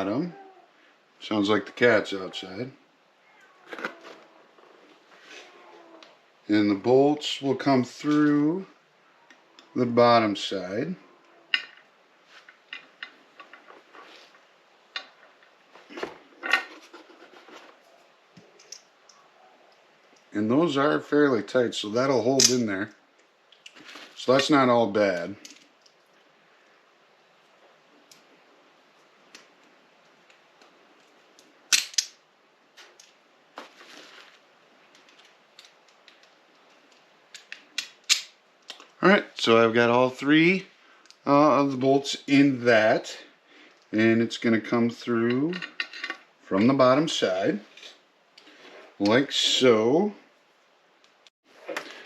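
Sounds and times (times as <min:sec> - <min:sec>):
clicks of parts being handled: 0:31.7 - 0:32.2
metal bolts clicking and clinking: 0:45.3 - 0:46.7.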